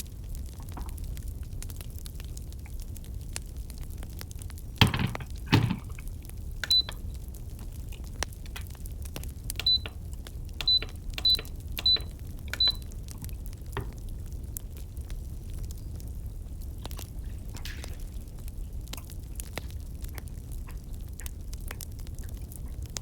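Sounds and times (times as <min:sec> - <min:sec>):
campfire crackling: 0:00.0 - 0:23.0
fire popping: 0:00.0 - 0:23.0
short high-pitched beeps: 0:06.6 - 0:07.0, 0:09.6 - 0:10.0, 0:10.6 - 0:12.9.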